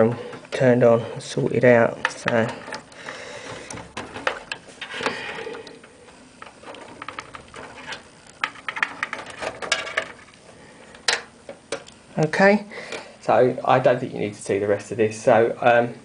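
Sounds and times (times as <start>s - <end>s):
hands handling computer hardware: 1.6s - 11.9s.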